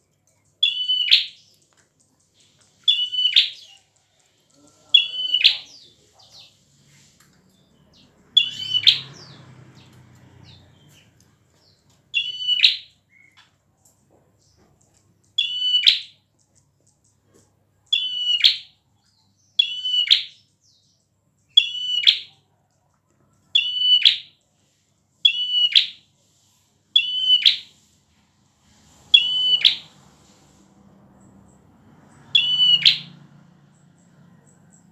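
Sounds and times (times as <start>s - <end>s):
bird singing high-pitched phrase: 0.6s - 1.6s, 2.9s - 3.9s, 4.9s - 6.5s, 8.0s - 9.3s, 11.7s - 13.4s, 15.4s - 16.2s, 17.9s - 18.8s, 19.5s - 20.9s, 21.5s - 22.4s, 23.6s - 24.3s, 25.3s - 26.0s, 29.2s - 29.9s, 32.4s - 33.2s.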